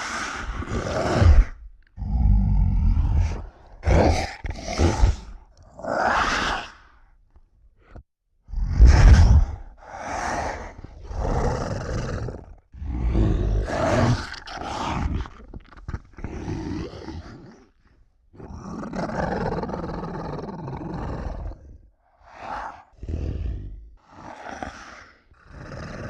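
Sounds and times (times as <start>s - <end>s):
roar and growl sound effects: 0.0s - 6.9s, 8.5s - 17.8s, 18.4s - 26.0s.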